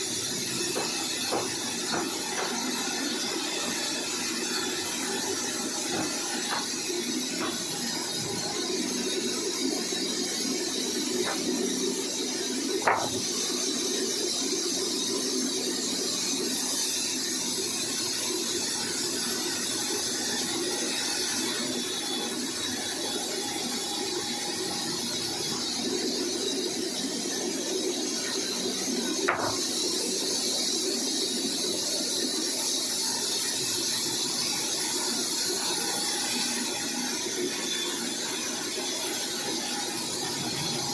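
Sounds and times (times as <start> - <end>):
sawmill saw cutting wood: 0.0 - 40.9
sharp knocks: 12.8 - 13.2, 29.3 - 29.6.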